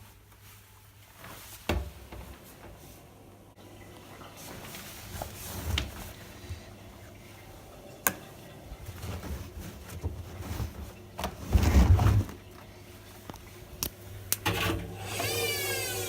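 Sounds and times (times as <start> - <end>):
motor whine: 15.0 - 16.0.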